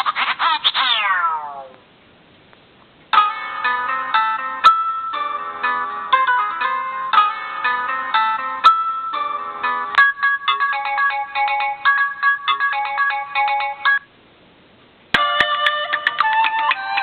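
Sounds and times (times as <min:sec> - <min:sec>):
smartphone ringtone melodies: 0:03.2 - 0:14.1, 0:15.2 - 0:17.0.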